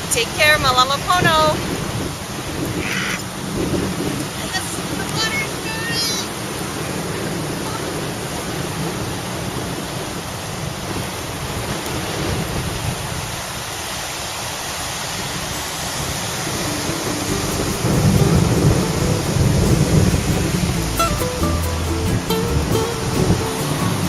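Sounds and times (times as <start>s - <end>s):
ocean surf washing: 0.0s - 24.0s
rain falling: 0.0s - 24.0s
low rumble: 16.7s - 24.0s.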